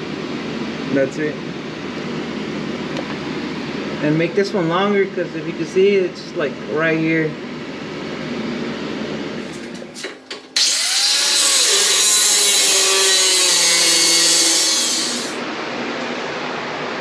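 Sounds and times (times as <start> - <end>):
power tool harsh hiss: 10.6 - 15.4.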